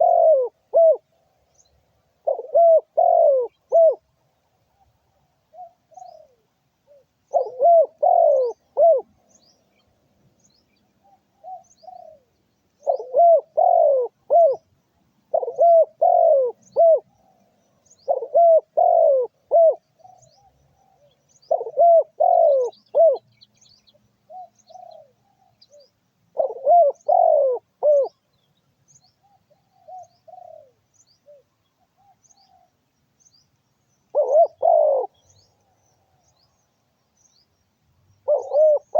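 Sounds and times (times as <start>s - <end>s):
doves cooing: 0.0s - 1.1s, 2.2s - 4.1s, 4.7s - 9.2s, 11.0s - 14.7s, 15.3s - 23.3s, 24.3s - 28.3s, 29.2s - 32.8s, 34.1s - 36.3s, 38.2s - 38.9s
small birds chirping: 0.0s - 38.9s.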